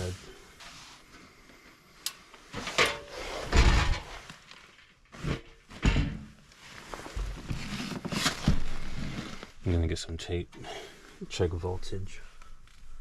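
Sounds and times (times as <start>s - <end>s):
objects knocking and thumping: 2.6s - 4.3s, 5.2s - 7.8s.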